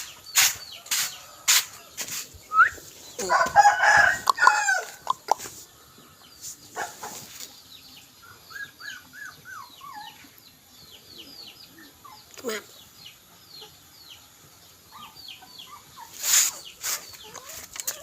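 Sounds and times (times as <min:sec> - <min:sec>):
rooster crowing: 0:03.2 - 0:05.1.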